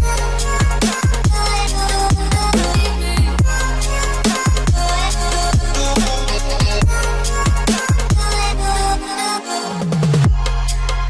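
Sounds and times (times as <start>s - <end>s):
deep kick drum: 0.0s - 3.7s, 4.4s - 5.0s, 6.6s - 8.4s, 10.2s - 10.5s.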